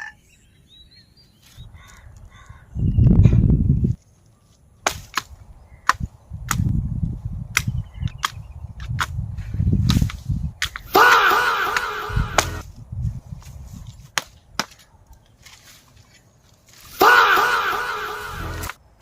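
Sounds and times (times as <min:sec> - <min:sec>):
sharp cracks or knocks: 0:04.8 - 0:06.7.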